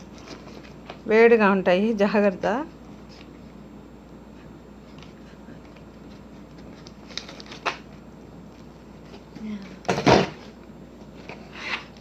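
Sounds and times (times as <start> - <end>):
paper bag crinkling: 6.6 - 8.0.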